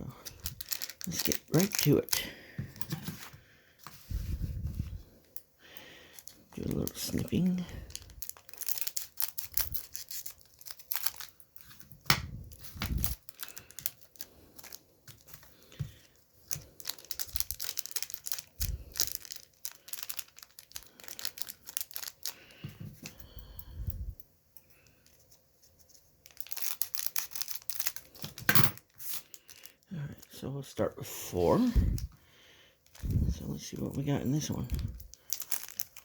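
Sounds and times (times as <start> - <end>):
foil crinkling: 0.1 - 3.4, 6.0 - 23.9, 24.7 - 32.1, 32.8 - 36.0
scissors snipping foil: 8.3 - 12.2, 26.3 - 29.3.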